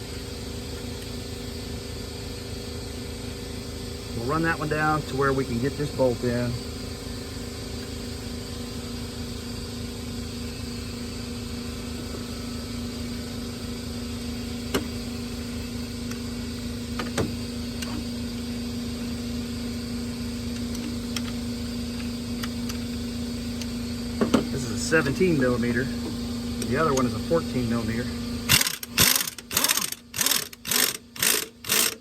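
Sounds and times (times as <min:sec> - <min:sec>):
impact wrench motor running: 0:28.4 - 0:32.0.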